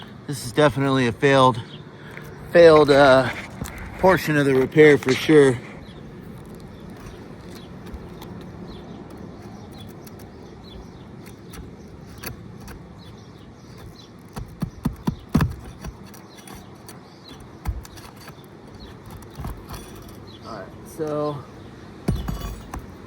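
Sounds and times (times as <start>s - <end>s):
metal clicks and scrapes: 6.3s - 20.4s
sharp clicks and knocks: 6.4s - 20.3s, 22.1s - 23.0s.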